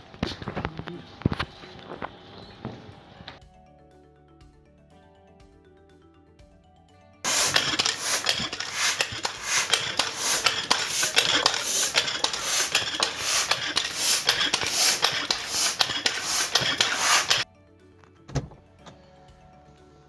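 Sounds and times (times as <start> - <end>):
clicks and rattles: 7.3 - 17.4
hand pump air puffs: 7.3 - 17.4.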